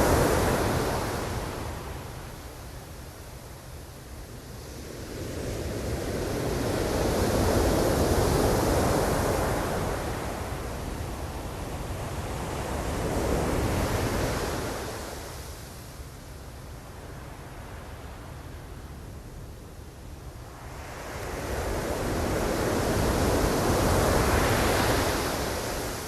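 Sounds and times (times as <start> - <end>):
ocean waves washing in: 0.0 - 2.7.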